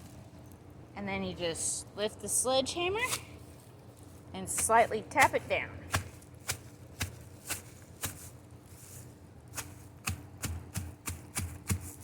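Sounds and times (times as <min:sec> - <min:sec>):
sledgehammer knocking on bread: 0:05.9 - 0:08.3, 0:09.5 - 0:12.0.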